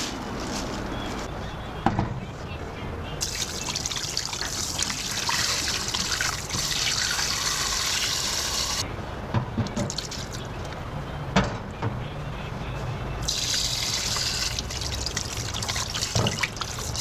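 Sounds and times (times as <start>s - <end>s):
water running from a tap: 3.2s - 8.8s, 13.3s - 17.0s.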